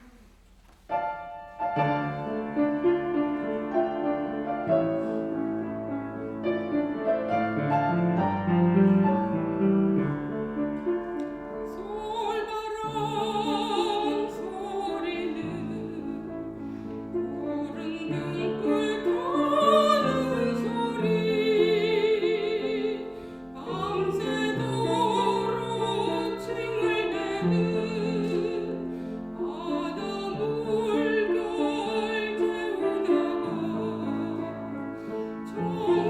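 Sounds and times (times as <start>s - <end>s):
piano accompaniment: 0.0s - 36.0s
soprano singing with vibrato: 11.7s - 16.6s, 17.2s - 36.0s.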